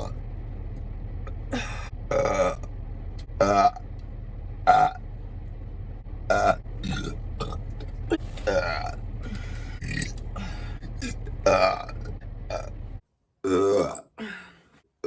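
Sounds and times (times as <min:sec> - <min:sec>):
steady low hum: 0:00.0 - 0:13.0
person burping: 0:06.3 - 0:12.7, 0:13.4 - 0:14.4.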